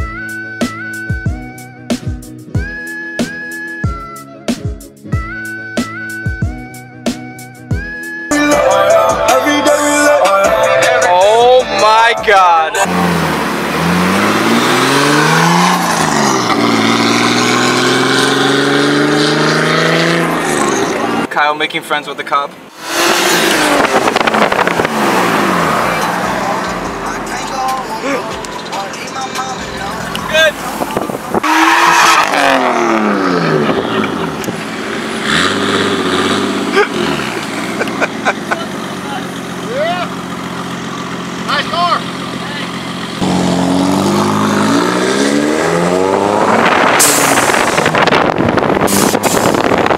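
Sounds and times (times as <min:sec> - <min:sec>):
car engine accelerating hard: 0:12.7 - 0:21.3, 0:22.7 - 0:49.9.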